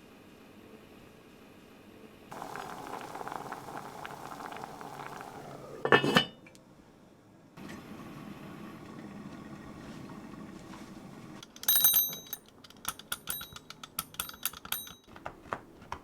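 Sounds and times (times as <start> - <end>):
food simmering and bubbling: 2.3 - 6.0
ringing clink of kitchenware: 5.9 - 6.4.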